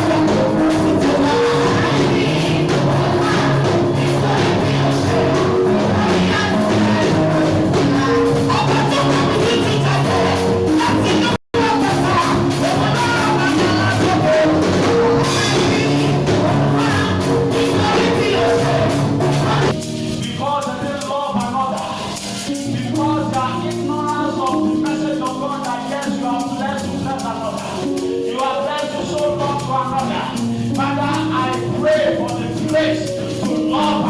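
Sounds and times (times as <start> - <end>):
band with percussion: 0.0 - 34.0
voices singing: 0.0 - 34.0.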